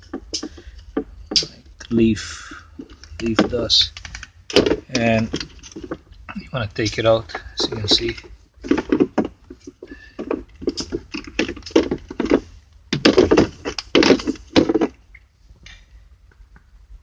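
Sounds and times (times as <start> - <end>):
plastic knocks and clicks: 2.8 - 6.0, 7.3 - 15.2.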